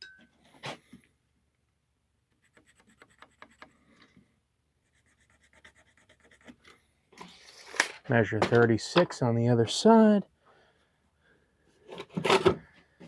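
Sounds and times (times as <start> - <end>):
light scratching on wood: 2.4 - 3.8, 4.9 - 7.8.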